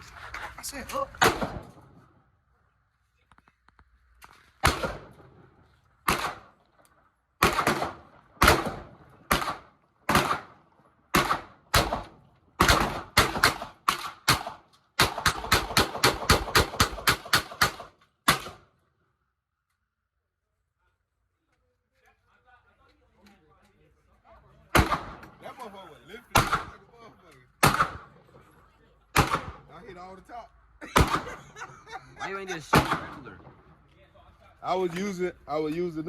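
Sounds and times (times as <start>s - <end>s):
gunshots: 1.0s - 2.0s, 4.6s - 6.6s, 7.4s - 18.7s, 24.7s - 25.5s, 26.3s - 26.9s, 27.6s - 28.4s, 29.1s - 29.8s, 30.9s - 31.6s, 32.7s - 33.7s.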